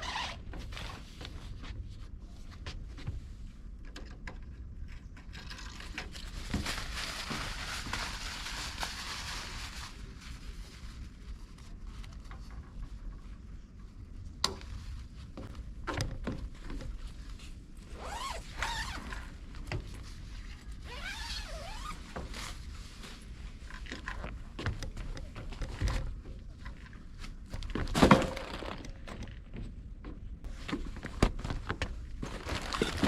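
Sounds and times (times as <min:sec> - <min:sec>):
gear rustling and swishing: 0:06.0 - 0:12.1, 0:17.0 - 0:24.4, 0:30.5 - 0:33.0
camping gear knocks and thunks: 0:27.6 - 0:33.0.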